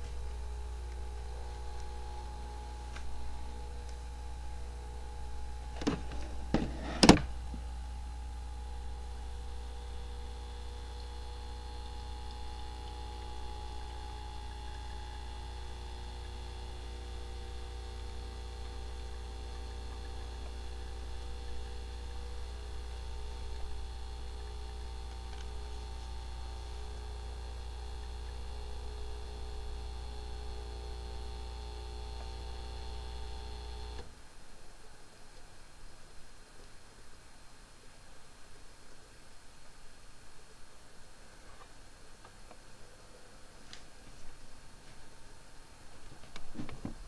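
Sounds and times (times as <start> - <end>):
espresso machine pump running: 0.0 - 34.1
mains hum: 0.0 - 47.0.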